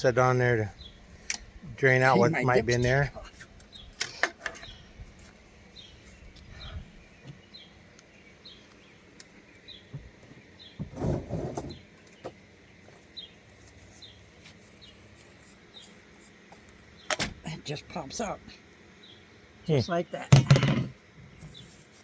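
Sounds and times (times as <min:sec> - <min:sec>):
bird chirping: 0:00.7 - 0:01.5, 0:02.1 - 0:04.9, 0:05.7 - 0:10.9, 0:16.8 - 0:20.2.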